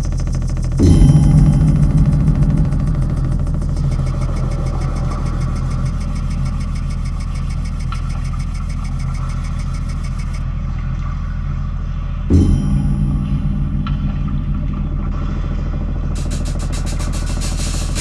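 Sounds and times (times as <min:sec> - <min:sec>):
fast high pulsing texture: 0:00.0 - 0:10.4, 0:16.2 - 0:18.0
low electronic drone: 0:00.0 - 0:10.4, 0:12.3 - 0:18.0.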